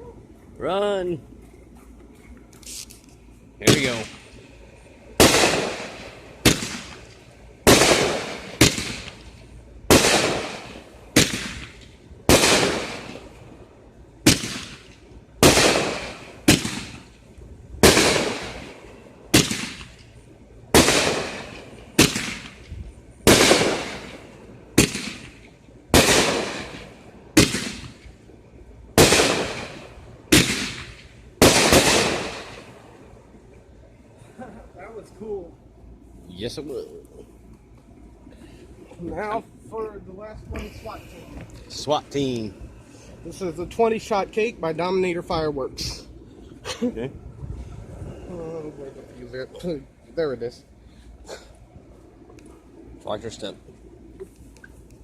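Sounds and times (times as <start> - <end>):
firework booms: 5.2 - 13.4, 14.2 - 17.2, 17.8 - 20.0, 20.7 - 28.2, 29.0 - 33.0.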